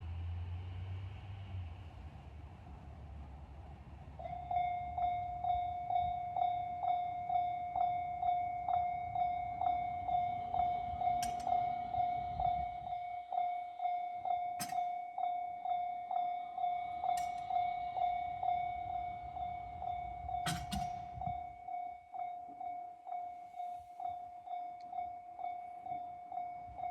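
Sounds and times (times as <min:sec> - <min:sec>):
level-crossing alarm dinging: 0:03.6 - 0:26.9.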